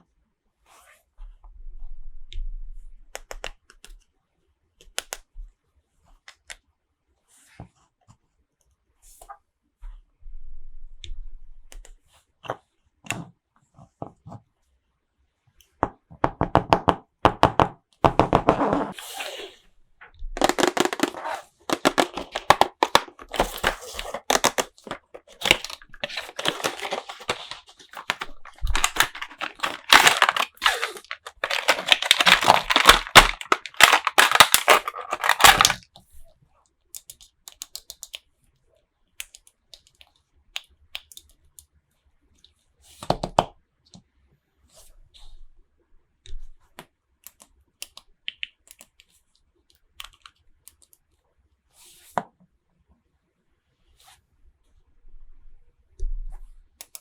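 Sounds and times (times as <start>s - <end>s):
plastic packaging crinkling: 20.4s - 35.8s.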